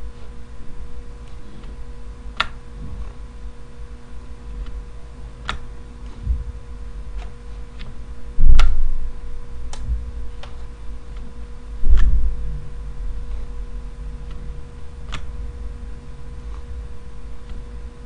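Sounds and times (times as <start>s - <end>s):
heavy low thumps: 6.2s - 6.8s.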